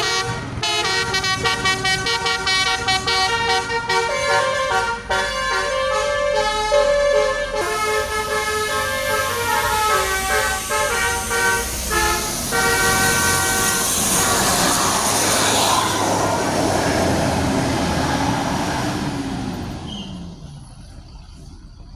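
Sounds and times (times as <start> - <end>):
musical air horn playing tune: 0.0 - 17.0
bus engine passing: 0.0 - 21.9.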